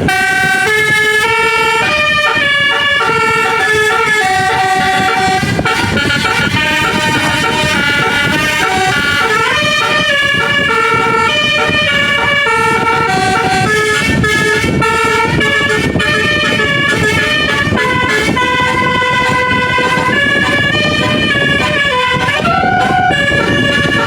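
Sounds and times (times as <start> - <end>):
continuous low rumble: 0.0 - 24.0
musical air horn playing a tune: 0.0 - 24.0.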